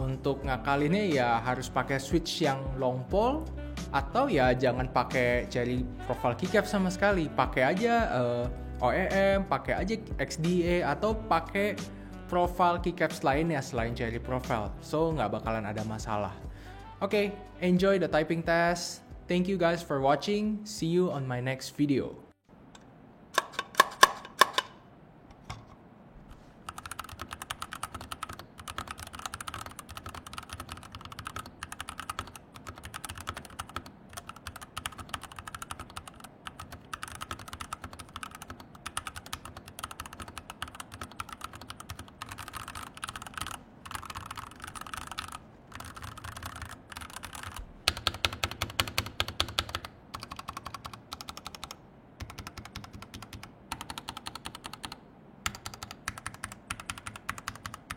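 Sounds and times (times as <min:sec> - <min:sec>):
mechanical keyboard typing: 0:26.6 - 0:57.9.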